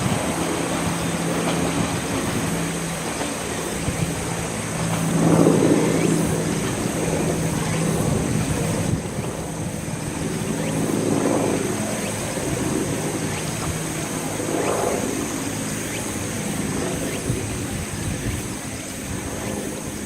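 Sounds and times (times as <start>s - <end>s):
railcar engine humming: 0.0s - 20.0s
wind on microphone: 0.0s - 20.0s.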